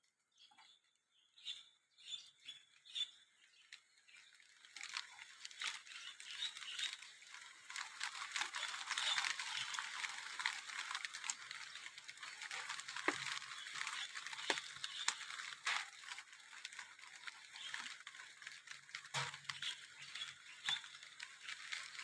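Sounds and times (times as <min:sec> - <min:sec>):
bird chirps: 0:00.3 - 0:04.3
rain pattering: 0:02.7 - 0:22.0.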